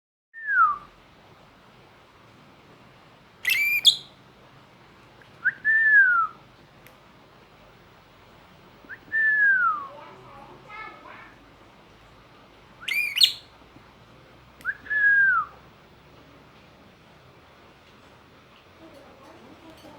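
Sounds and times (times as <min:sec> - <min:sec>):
bird falling whistles: 0:03.5 - 0:04.0, 0:12.8 - 0:13.4
bird squawk: 0:03.5 - 0:04.1, 0:12.8 - 0:13.4.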